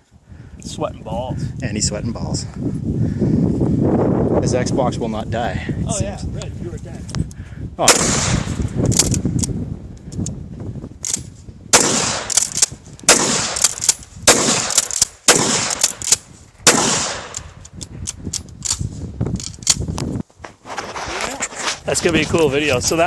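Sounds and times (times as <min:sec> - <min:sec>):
gunshots with rolling echo: 0:07.8 - 0:08.7, 0:11.7 - 0:17.6.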